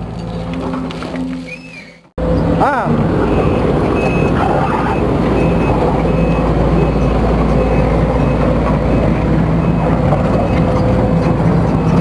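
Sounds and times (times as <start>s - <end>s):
excavator diesel engine running: 2.1s - 12.0s
reversing alarm short high beeps: 3.3s - 10.8s.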